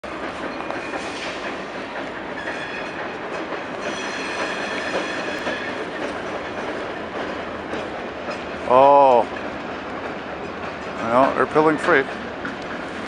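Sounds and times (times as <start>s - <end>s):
train wheels clattering on rails: 0.0s - 13.0s
high steady squeal: 3.8s - 6.4s.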